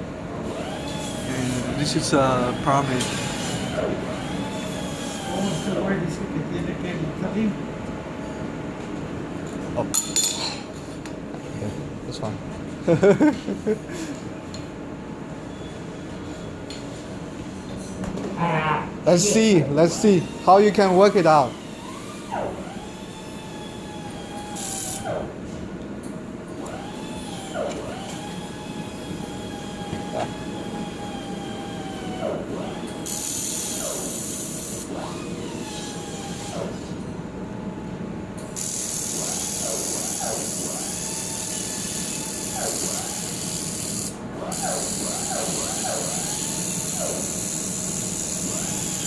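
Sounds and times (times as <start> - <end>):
machine hum: 0.0 - 10.1, 11.1 - 49.0.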